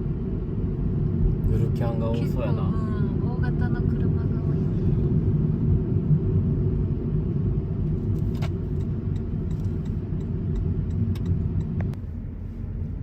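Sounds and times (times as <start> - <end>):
car driving rumble: 0.0 - 13.0.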